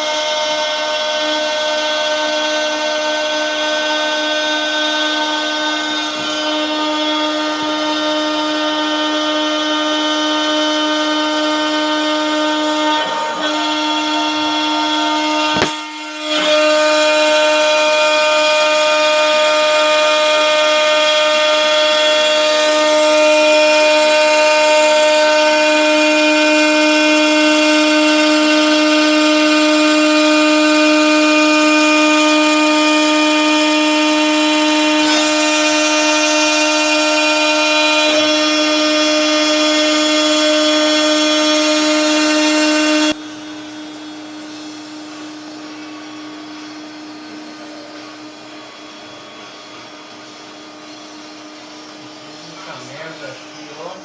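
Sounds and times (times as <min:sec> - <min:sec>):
cnc router spindle whine: 0:00.0 - 0:54.0
quieter steady machine noise: 0:00.0 - 0:54.0.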